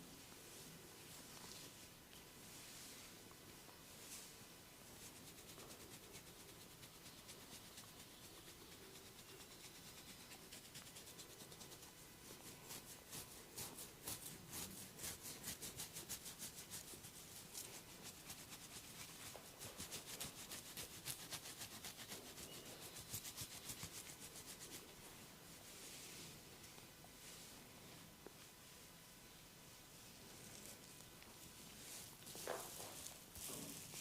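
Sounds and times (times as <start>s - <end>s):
hands rubbing during massage: 5.0s - 26.4s.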